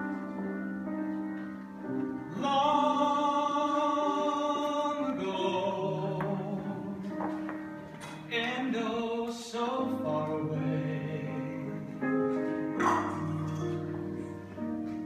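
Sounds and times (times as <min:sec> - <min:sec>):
sustained instrumental chords: 0:12.6 - 0:15.0.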